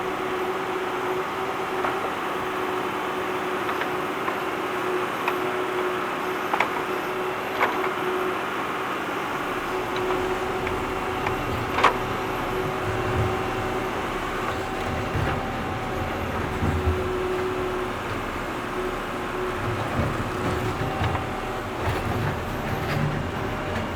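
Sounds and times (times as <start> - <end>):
tractor engine running: 9.2 - 23.9
low uneven rumble: 9.4 - 23.9.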